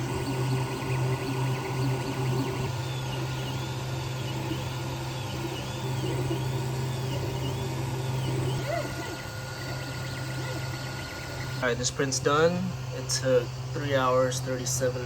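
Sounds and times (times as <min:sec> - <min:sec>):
fan hum: 0:00.0 - 0:15.0
stepper motors whining: 0:00.0 - 0:15.0.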